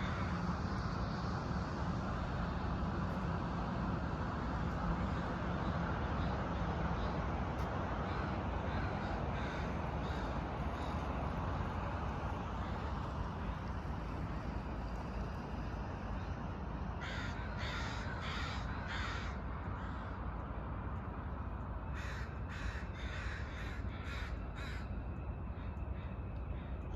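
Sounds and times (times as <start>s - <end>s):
steady low rumble: 0.0s - 26.9s
crows cawing: 8.0s - 11.1s, 17.0s - 20.2s, 21.9s - 26.7s.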